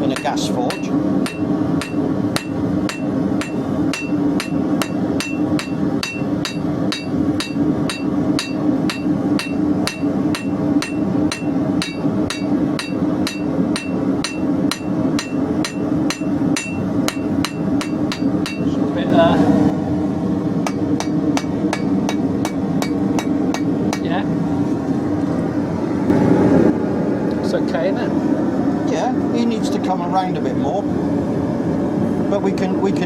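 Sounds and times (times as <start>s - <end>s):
hammer striking steel on anvil: 0.0s - 18.8s, 20.6s - 24.2s
gas forge burner: 0.0s - 33.0s.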